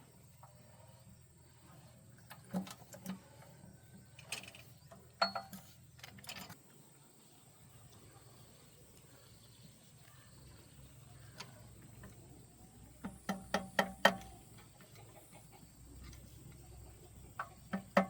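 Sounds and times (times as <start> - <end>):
metal tools clinking and knocking: 4.2 - 6.6.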